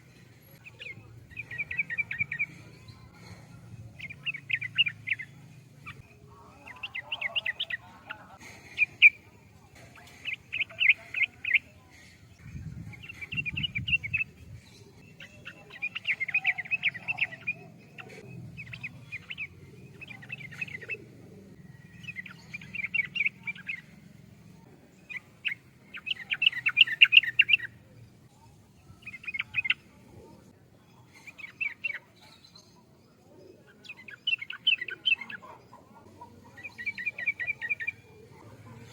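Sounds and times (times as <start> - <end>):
bird singing bubbling chattering notes: 0.6 - 3.1, 25.0 - 27.7.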